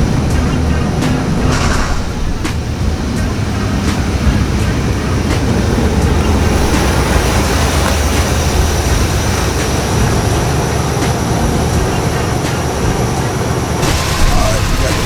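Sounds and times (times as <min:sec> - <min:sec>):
car engine and road rumble: 0:00.0 - 0:15.0.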